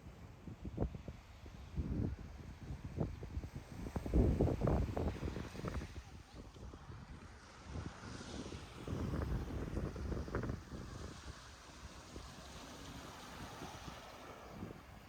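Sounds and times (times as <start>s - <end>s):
wind buffeting the microphone: 0.0s - 15.0s
surf on the beach: 0.2s - 15.0s.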